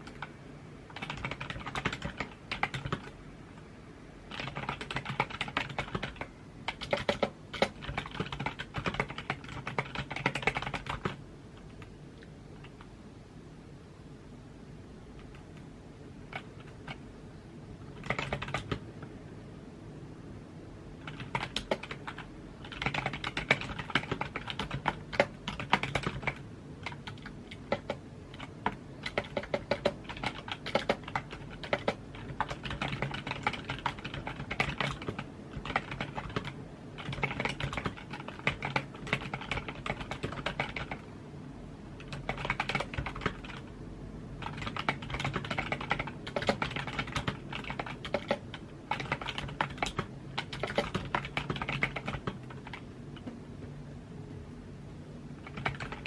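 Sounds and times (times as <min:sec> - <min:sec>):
typing on computer keyboard: 0:00.0 - 0:03.2, 0:04.3 - 0:11.9, 0:16.3 - 0:17.0, 0:18.0 - 0:18.9, 0:21.0 - 0:41.1, 0:42.0 - 0:43.7, 0:44.4 - 0:53.4, 0:55.4 - 0:56.0.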